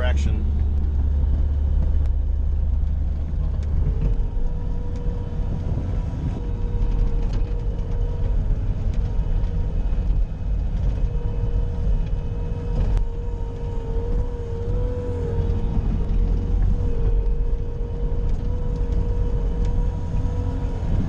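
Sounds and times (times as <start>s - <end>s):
loader engine running under load: 0.0s - 21.0s
steady whine: 0.0s - 21.0s.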